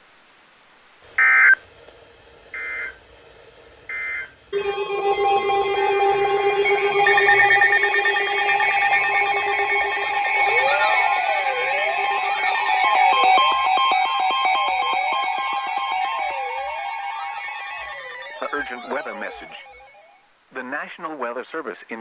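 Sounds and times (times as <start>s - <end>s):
screechy digital data bursts: 4.6s - 20.1s
electronic alert tones: 4.6s - 20.2s.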